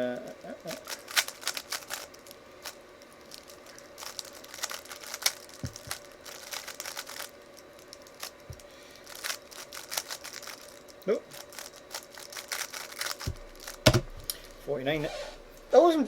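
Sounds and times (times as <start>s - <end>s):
dull knocks: 13.3s - 14.5s.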